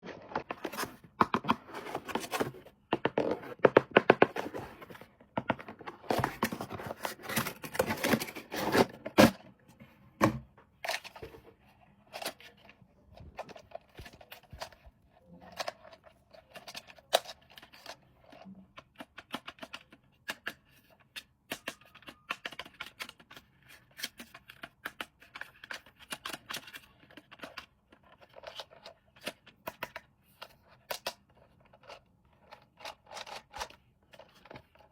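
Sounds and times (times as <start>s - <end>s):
toy packaging being opened: 4.2s - 9.4s.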